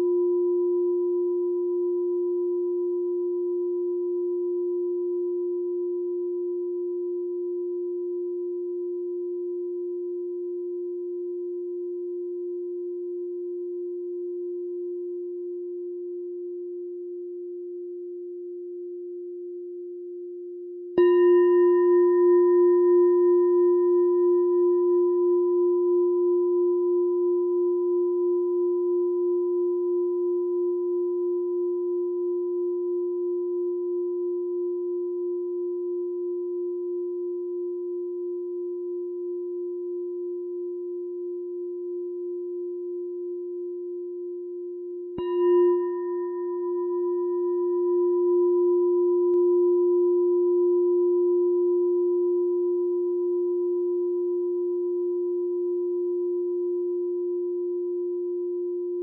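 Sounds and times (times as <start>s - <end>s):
meditation bell ringing: 21.0s - 29.1s, 45.2s - 59.0s.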